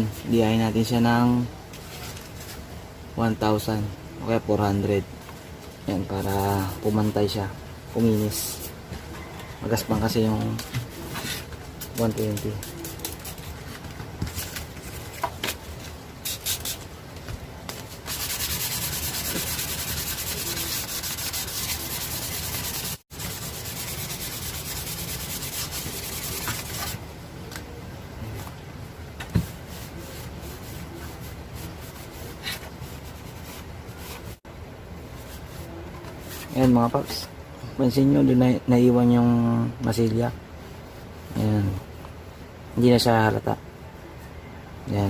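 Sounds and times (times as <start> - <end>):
sandpaper rasping on filler: 16.2 - 16.8, 18.0 - 27.0.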